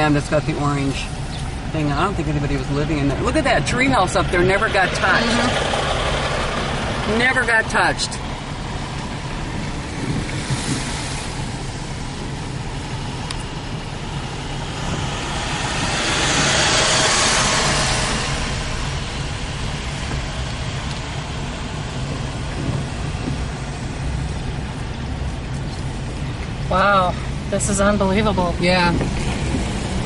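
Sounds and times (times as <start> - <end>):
car engine rumble from inside: 0.0 - 30.0.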